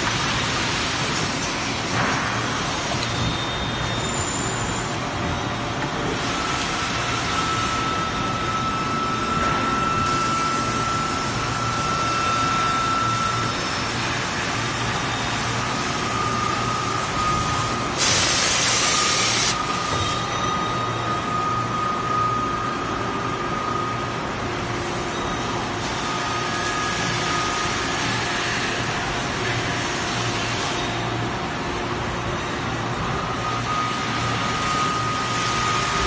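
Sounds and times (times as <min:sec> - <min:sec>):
factory machinery din: 0:00.0 - 0:36.0
high machine whine: 0:00.0 - 0:36.0
loud hiss: 0:18.0 - 0:19.6.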